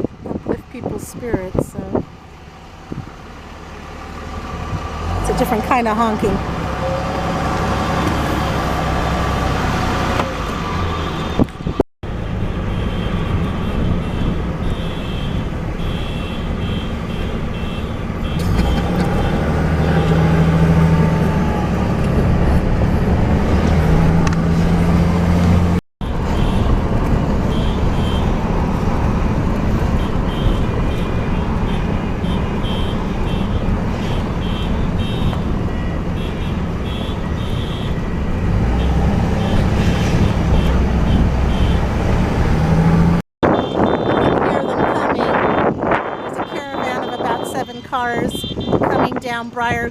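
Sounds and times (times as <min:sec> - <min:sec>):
engine and road rumble: 0:00.0 - 0:49.9
car horns honking: 0:05.2 - 0:10.5, 0:12.1 - 0:20.7, 0:26.0 - 0:42.1, 0:43.0 - 0:49.8.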